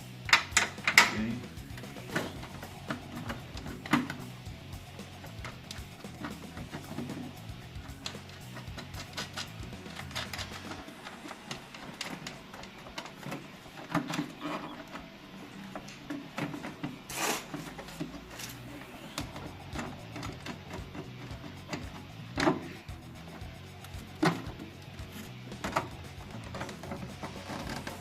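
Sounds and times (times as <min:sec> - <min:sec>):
background music: 0:00.0 - 0:28.0.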